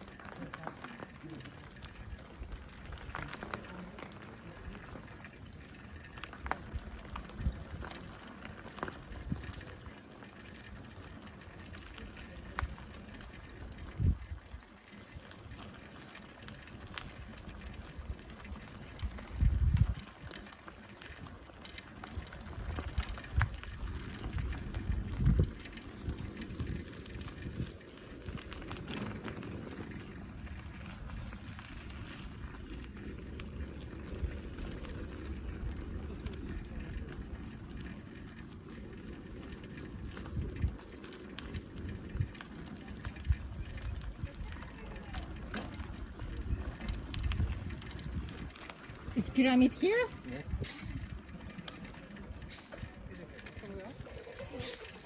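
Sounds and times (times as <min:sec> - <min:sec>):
bicycle rattling over bumps: 0:00.0 - 0:55.0
bicycle tyres rumbling on dirt: 0:00.0 - 0:55.0
wind on microphone: 0:13.5 - 0:14.6, 0:16.9 - 0:20.4, 0:22.0 - 0:37.9, 0:39.0 - 0:53.2.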